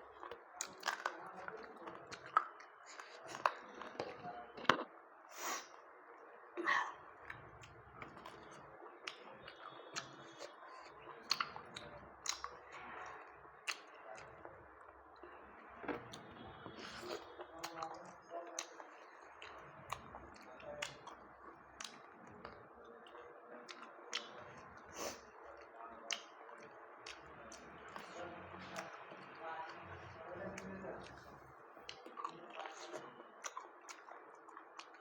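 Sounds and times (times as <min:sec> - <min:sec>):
person chewing: 0:07.6 - 0:12.6, 0:15.8 - 0:17.9, 0:31.0 - 0:35.0.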